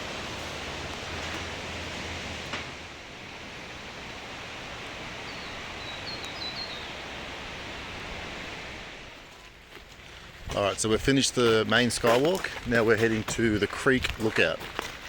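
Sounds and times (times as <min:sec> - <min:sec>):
waterfall and river rushing: 0:00.0 - 0:09.2
bird chirping: 0:05.2 - 0:07.1.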